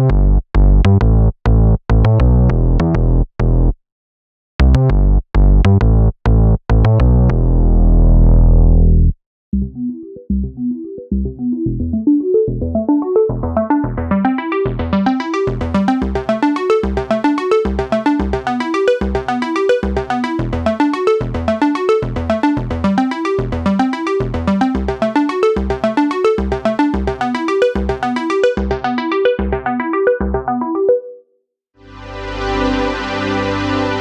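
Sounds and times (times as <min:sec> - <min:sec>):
fast synth bass line: 0:06.8 - 0:30.6
plucked keyboard synth notes: 0:09.6 - 0:31.2.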